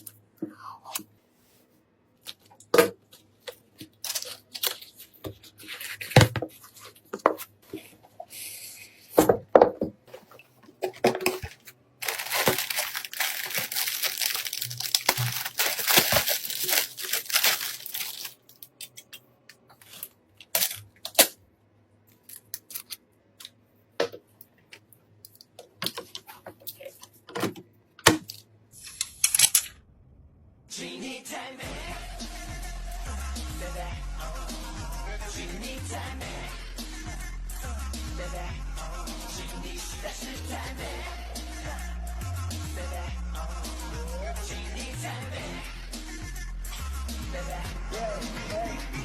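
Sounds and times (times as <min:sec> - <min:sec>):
hands handling parts and packaging: 0:02.2 - 0:07.9, 0:09.2 - 0:21.4, 0:22.1 - 0:29.7
tearing crinkling rustle: 0:11.4 - 0:19.2.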